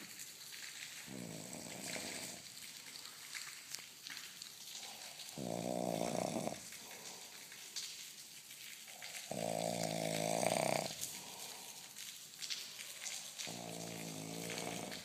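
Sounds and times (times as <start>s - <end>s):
man snoring: 1.1s - 2.4s, 5.4s - 6.6s, 9.3s - 11.1s, 13.5s - 15.0s.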